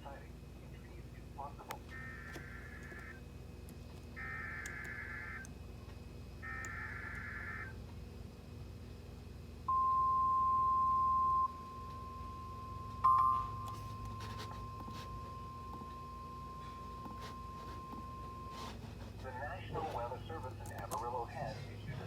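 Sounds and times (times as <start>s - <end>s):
steady attention tone: 4.2s - 5.5s, 6.4s - 7.8s, 9.7s - 21.4s.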